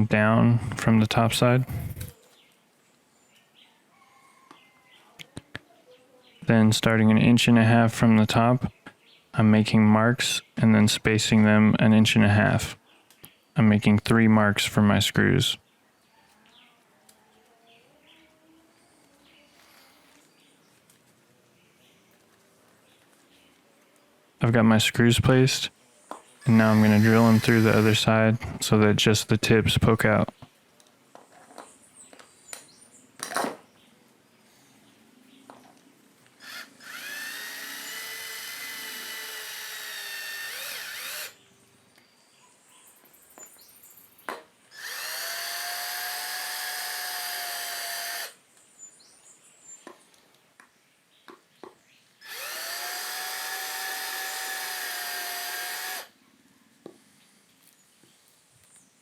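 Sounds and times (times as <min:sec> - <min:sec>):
cordless drill whining: 0:26.4 - 0:28.2, 0:36.4 - 0:41.4, 0:44.7 - 0:48.4, 0:52.2 - 0:56.2.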